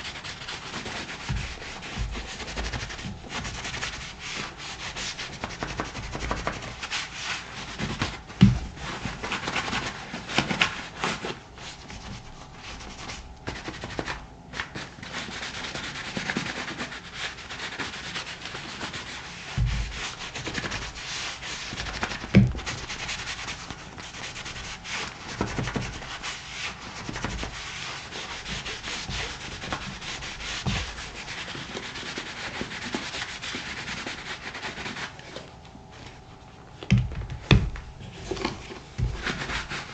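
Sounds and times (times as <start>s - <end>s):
glove rubbing leather boot: 0.0s - 35.4s, 37.4s - 39.9s
low thumps from handling boot: 8.4s - 8.8s.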